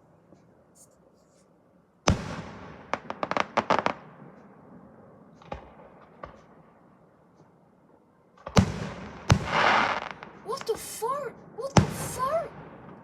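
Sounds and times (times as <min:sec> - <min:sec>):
firework crackling pops: 0:02.1 - 0:04.1, 0:08.4 - 0:11.0, 0:11.8 - 0:13.0
firework bang: 0:08.5 - 0:10.2.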